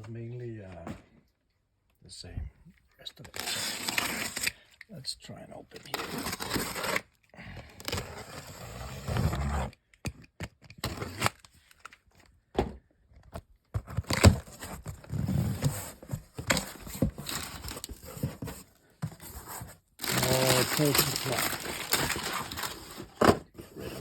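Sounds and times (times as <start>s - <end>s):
cardboard box tearing: 3.3s - 4.5s, 5.9s - 7.1s, 10.8s - 11.4s, 13.8s - 24.0s.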